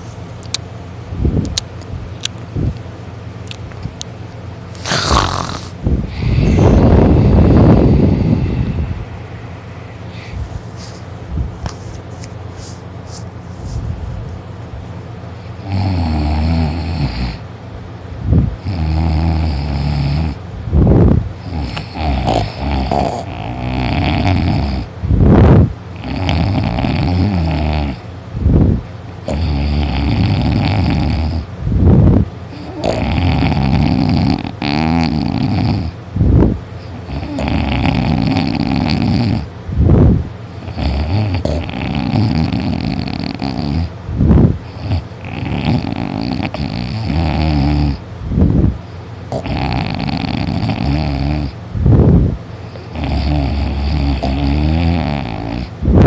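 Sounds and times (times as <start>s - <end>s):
person snoring loudly: 4.8s - 9.0s, 15.6s - 17.4s, 18.6s - 20.4s, 21.4s - 24.9s, 26.0s - 28.0s, 29.3s - 31.5s, 32.5s - 36.0s, 37.0s - 39.5s, 40.6s - 43.9s, 44.7s - 48.0s, 49.3s - 51.6s, 52.8s - 55.7s.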